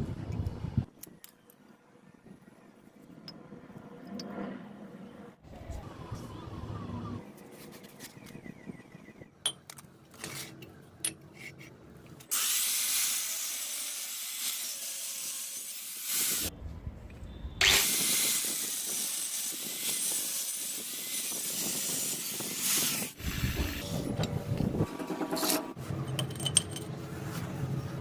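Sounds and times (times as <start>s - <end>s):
power tool running: 17.6s - 23.9s
handling clicks and knocks: 26.1s - 27.0s.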